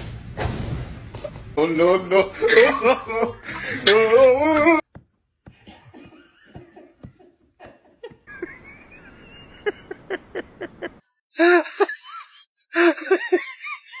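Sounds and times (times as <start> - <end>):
high-pitched laughter: 11.4 - 14.0.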